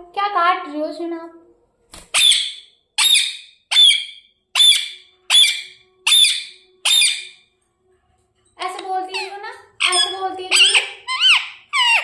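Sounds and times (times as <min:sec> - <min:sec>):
parrot shrill calls: 0:02.1 - 0:07.4, 0:09.1 - 0:12.0.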